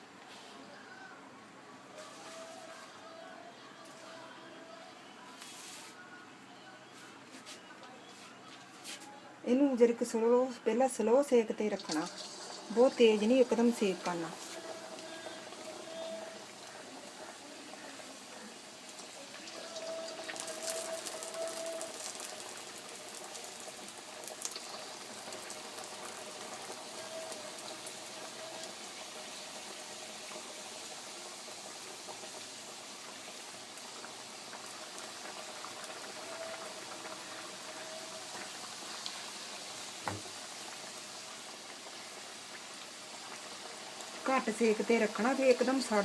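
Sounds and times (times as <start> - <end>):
frying oil hissing: 1.9 - 4.3, 10.1 - 46.0.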